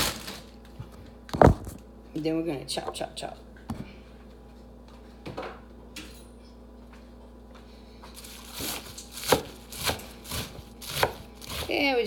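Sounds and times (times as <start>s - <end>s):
knife chopping on cutting board: 8.5s - 11.7s.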